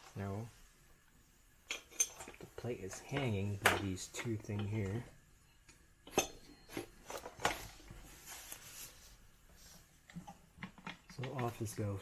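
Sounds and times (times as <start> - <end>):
metal parts clicking and clinking: 1.7 - 4.8.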